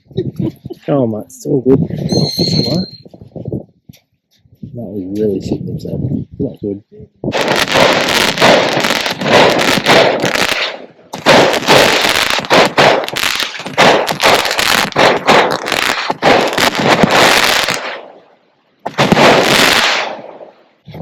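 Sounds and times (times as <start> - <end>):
fireworks crackling bangs: 7.3 - 18.2, 18.8 - 20.5.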